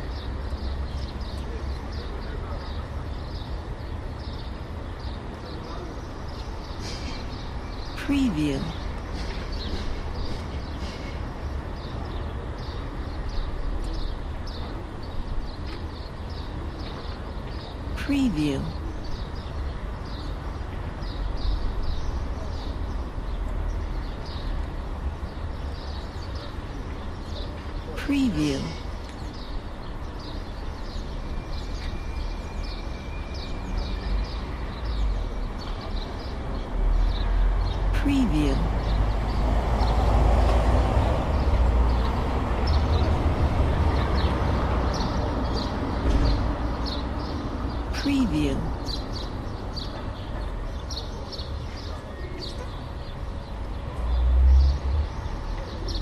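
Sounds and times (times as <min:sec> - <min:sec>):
traffic rumble: 0:33.6 - 0:56.0
small birds chirping: 0:44.0 - 0:56.0.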